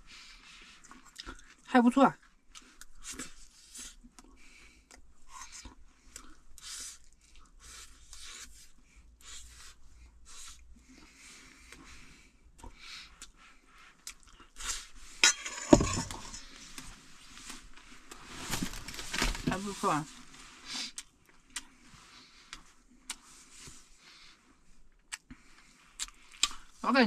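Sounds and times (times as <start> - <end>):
person chewing: 0.8 - 1.6, 14.0 - 14.9, 20.8 - 21.8, 24.9 - 26.7
spoon scraping and clinking bowl: 15.2 - 16.5.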